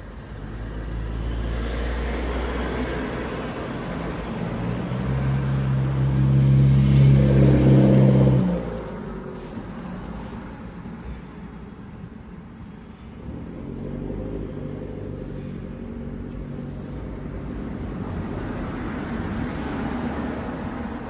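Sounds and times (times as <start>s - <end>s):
vehicle engine humming: 0.0s - 21.0s.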